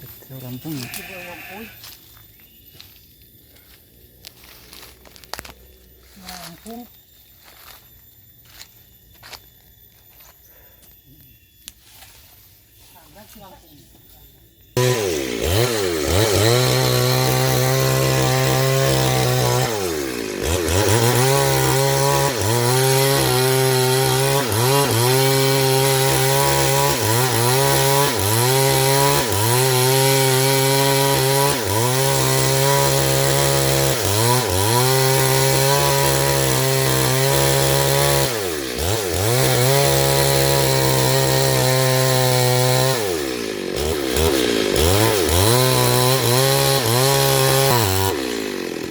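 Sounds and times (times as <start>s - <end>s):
chainsaw cutting wood: 3.6s - 6.8s, 14.8s - 48.9s.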